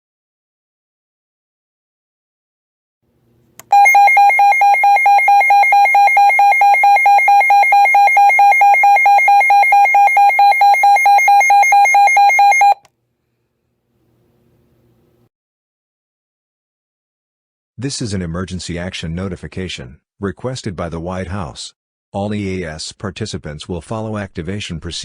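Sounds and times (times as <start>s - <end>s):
electronic alert beeps: 3.7s - 12.8s.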